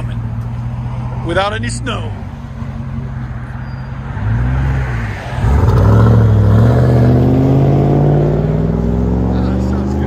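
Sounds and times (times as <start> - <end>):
engine accelerating away: 5.4 - 10.0.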